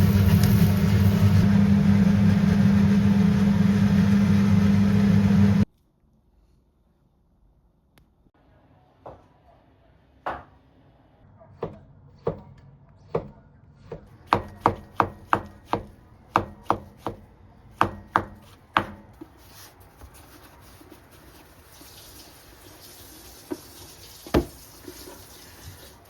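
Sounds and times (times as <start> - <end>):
knife chopping on cutting board: 13.9 - 17.2, 17.8 - 19.1.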